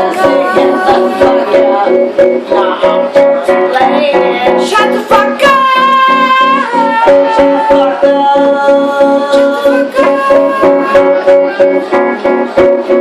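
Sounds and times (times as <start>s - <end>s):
guitar strumming: 0.0s - 13.0s
held sliding pitched note: 6.0s - 13.0s.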